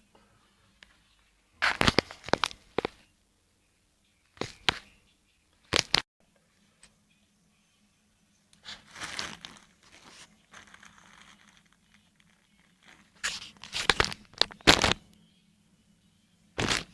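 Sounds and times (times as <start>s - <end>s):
handling scraping and rustling: 0.4s - 3.1s, 4.4s - 5.0s, 8.5s - 15.1s, 16.6s - 16.9s.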